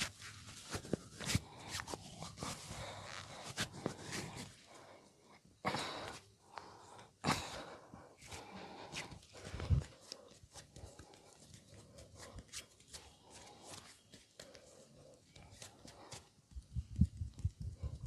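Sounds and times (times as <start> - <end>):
hands rubbing skin: 8.2 - 16.5.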